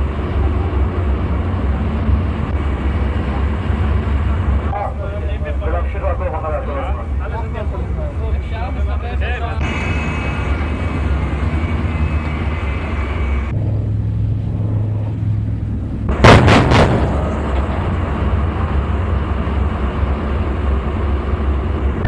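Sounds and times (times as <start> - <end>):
low rumble: 0.0 - 22.0
gunshots: 16.1 - 17.6.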